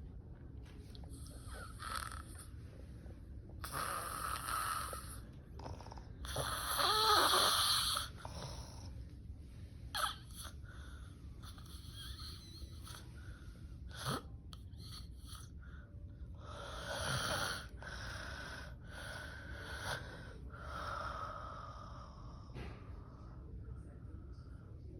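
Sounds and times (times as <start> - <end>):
woman snoring: 1.3 - 2.4, 3.6 - 8.7, 16.5 - 20.1.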